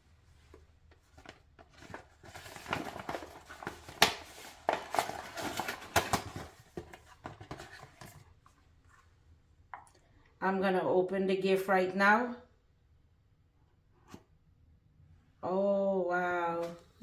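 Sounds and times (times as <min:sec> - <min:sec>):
gift wrapping rustling and crinkling: 0:00.4 - 0:09.1.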